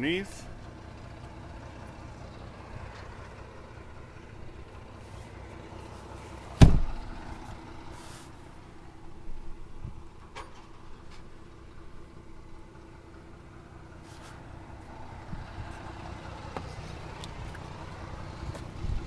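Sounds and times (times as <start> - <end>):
engine idling hum: 0.0 - 19.0
loud heavy thump: 6.6 - 7.2.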